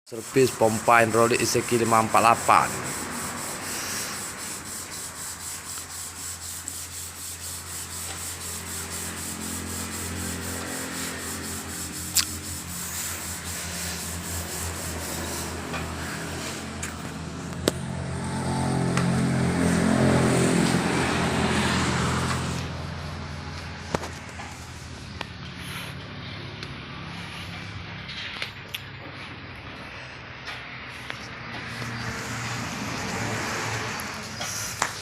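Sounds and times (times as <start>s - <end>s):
machine hum: 6.4s - 20.0s
hydraulic pump rasping growl: 7.7s - 17.2s.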